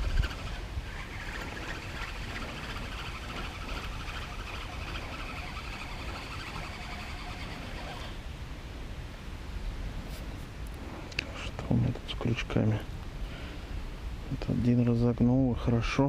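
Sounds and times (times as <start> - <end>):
chorus of chirring animals: 0.0 - 8.2
low wind rumble: 0.0 - 16.0.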